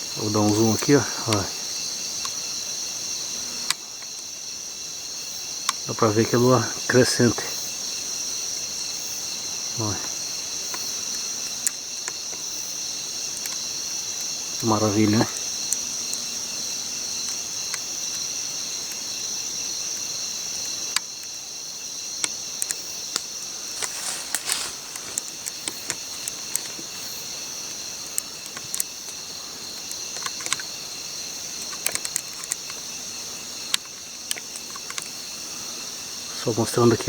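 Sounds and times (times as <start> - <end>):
night insects chirping: 0.0 - 37.0
sharp clicks and pops: 22.2 - 26.9, 28.0 - 30.7, 31.5 - 32.8, 33.7 - 35.1.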